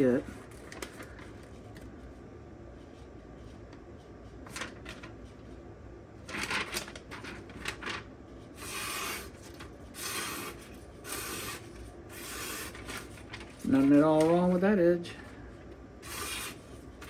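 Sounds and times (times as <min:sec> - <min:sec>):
knife edge hissing strokes: 0:16.0 - 0:16.7.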